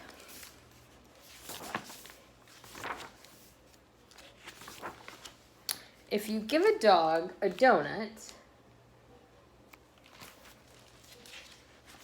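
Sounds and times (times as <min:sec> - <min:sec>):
paper pages turning: 0:00.1 - 0:05.5, 0:09.7 - 0:12.0.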